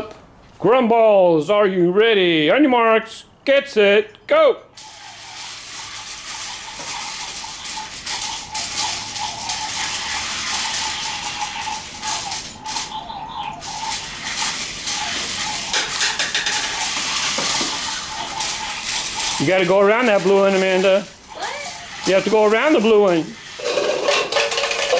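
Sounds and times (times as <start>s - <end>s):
small electric motors whirring: 4.8s - 23.7s.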